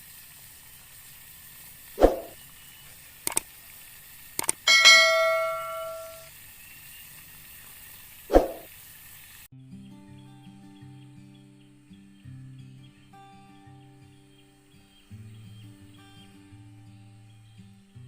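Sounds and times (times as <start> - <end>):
faint steady hiss: 0.0 - 18.0
sharp clicks: 3.2 - 3.5, 4.4 - 4.6
bell-like chime: 4.7 - 6.3.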